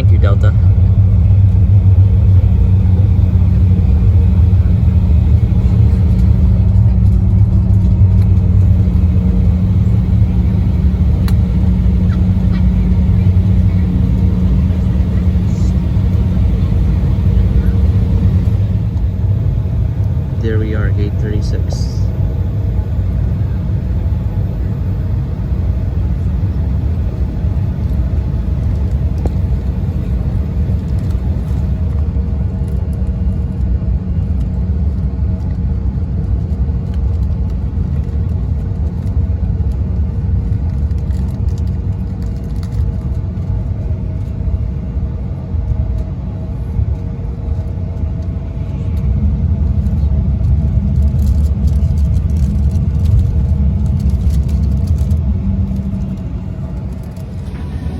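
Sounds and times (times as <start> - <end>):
faint steady hum: 0.0 - 33.7, 45.6 - 57.9
jet cabin engine rumble: 0.0 - 57.9.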